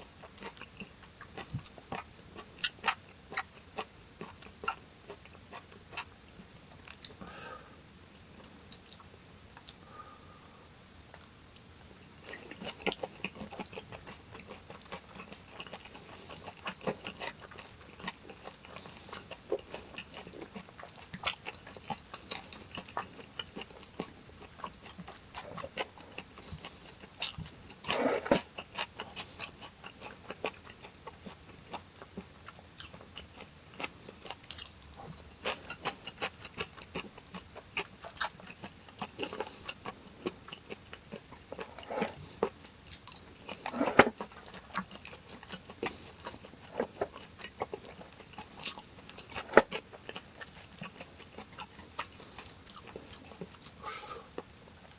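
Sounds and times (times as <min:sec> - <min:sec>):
crunchy bites and chewing: 0:12.2 - 0:54.6.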